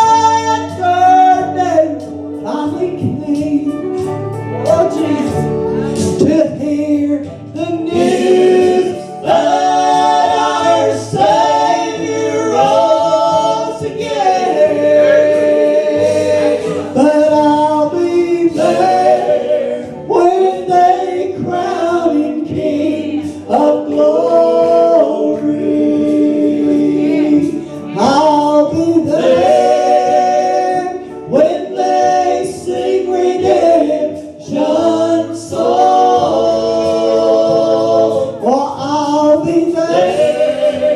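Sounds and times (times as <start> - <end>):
gospel choir singing in harmony: 0.0 - 40.9.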